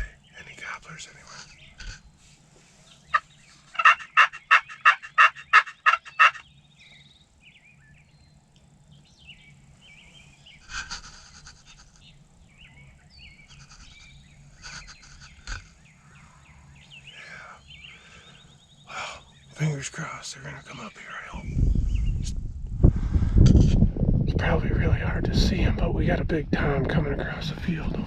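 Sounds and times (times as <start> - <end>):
faint bird calls: 0.0 - 22.3
loud turkey yelps: 3.1 - 6.4.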